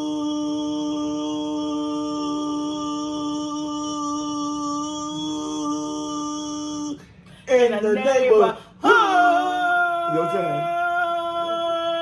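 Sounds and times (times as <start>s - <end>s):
person singing a long note: 0.0s - 7.0s.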